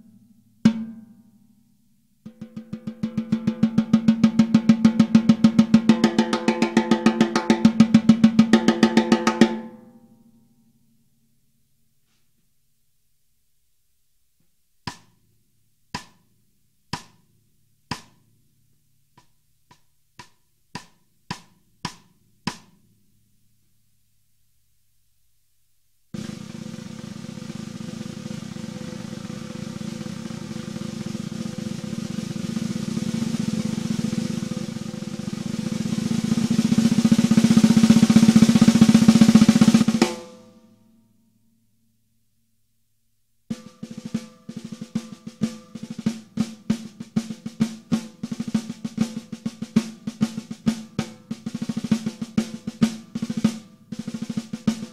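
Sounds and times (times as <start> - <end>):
snare drum roll: 2.3 - 9.7, 26.1 - 40.6, 43.5 - 54.9
snare drum hits: 26.2 - 40.5.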